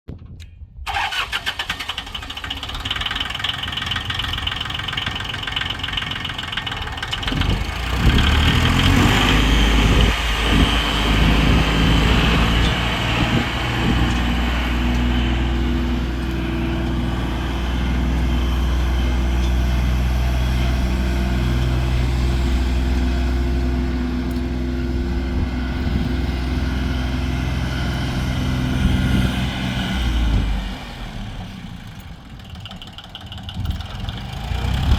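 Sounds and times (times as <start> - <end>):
starter cranking engine: 0.9 - 19.4, 32.0 - 34.9
tractor diesel engine idling: 0.9 - 34.9.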